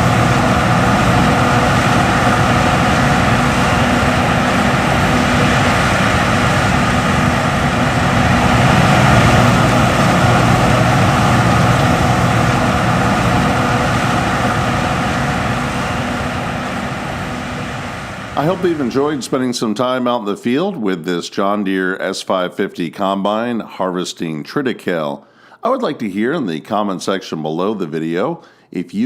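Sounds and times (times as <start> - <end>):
combine harvester droning: 0.0 - 19.8.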